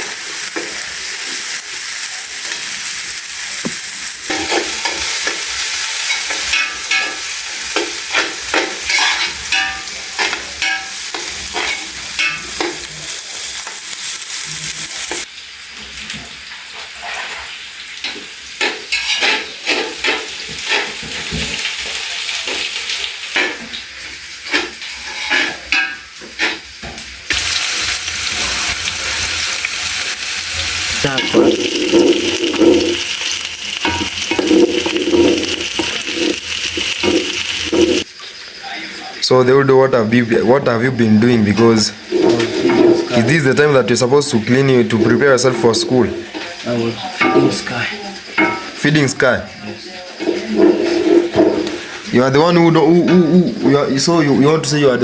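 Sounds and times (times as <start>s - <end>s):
food sizzling in a pan: 0.0s - 55.0s
spoon scraping a pan: 3.5s - 15.3s, 16.9s - 21.7s, 24.4s - 38.1s, 41.6s - 43.4s, 44.9s - 48.8s, 50.0s - 52.1s.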